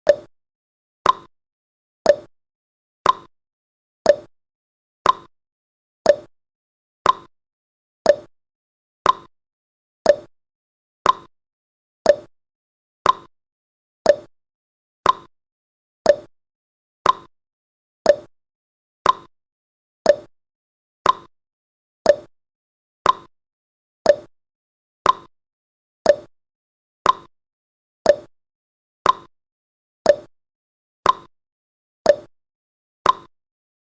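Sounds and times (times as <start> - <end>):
timer ticking: 0.0 - 0.3, 1.0 - 1.3, 2.1 - 2.3, 3.0 - 3.3, 4.0 - 4.3, 5.0 - 5.3, 6.0 - 6.3, 7.0 - 7.3, 8.1 - 8.3, 9.0 - 9.3, 10.0 - 10.3, 11.0 - 11.3, 12.0 - 12.3, 13.0 - 13.3, 14.0 - 14.3, 15.0 - 15.3, 16.0 - 16.3, 17.0 - 17.3, 18.1 - 18.3, 19.0 - 19.3, 20.1 - 20.3, 21.0 - 21.3, 22.1 - 22.3, 23.0 - 23.3, 24.1 - 24.3, 25.0 - 25.3, 26.0 - 26.3, 27.0 - 27.3, 28.1 - 28.3, 29.0 - 29.3, 30.1 - 30.3, 31.0 - 31.3, 32.1 - 32.3, 33.0 - 33.3.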